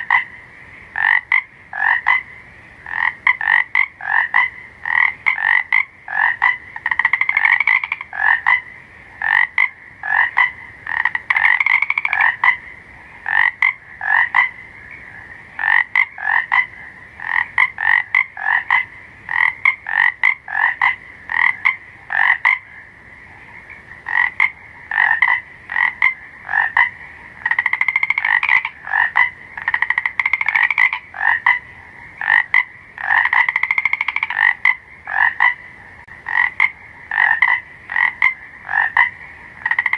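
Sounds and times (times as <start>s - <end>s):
frog trilled call: 0.0s - 0.4s, 1.0s - 39.9s
frogs croaking: 0.0s - 39.9s.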